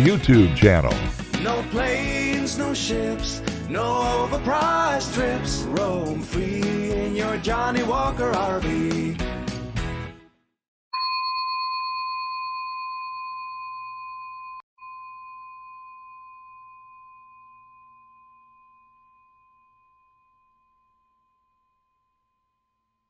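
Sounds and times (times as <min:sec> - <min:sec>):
bell-like chime ringing: 0:11.0 - 0:22.2.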